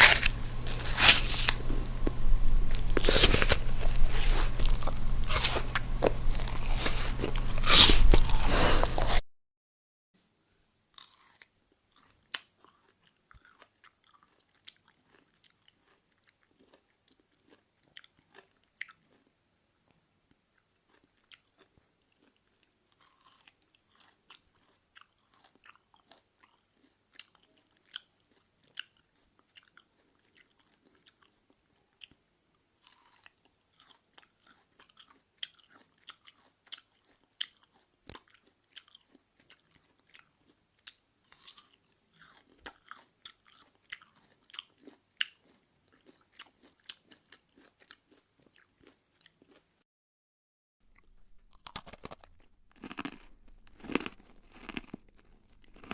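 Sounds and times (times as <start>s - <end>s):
person chewing crunchy food: 0.0s - 9.2s, 10.9s - 19.4s, 20.3s - 49.7s, 50.9s - 55.9s
wet mouth clicks: 0.0s - 9.2s.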